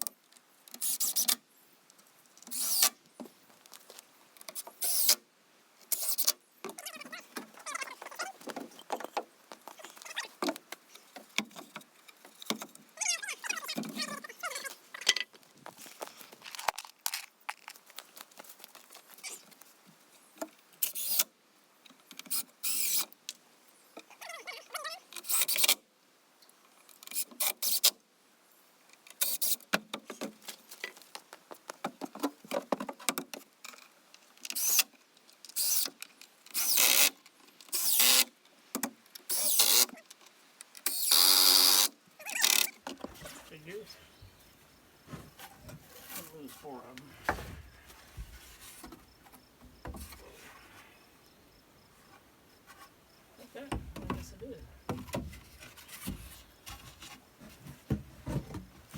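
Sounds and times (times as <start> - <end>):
handling clicks and knocks: 53.6 - 58.9.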